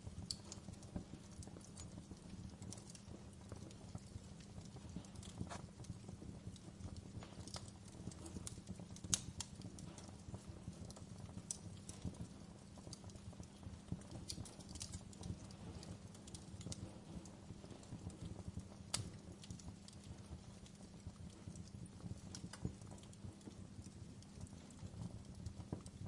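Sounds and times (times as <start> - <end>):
wood fire crackling: 0.0 - 26.0.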